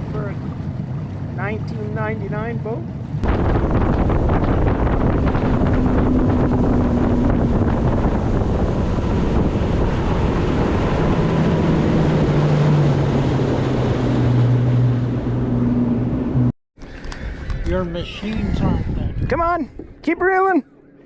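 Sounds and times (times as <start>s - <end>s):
water rushing past hull: 0.0s - 16.5s
outboard motor running: 0.0s - 18.4s, 19.0s - 21.0s
wind buffeting microphone: 0.0s - 21.0s.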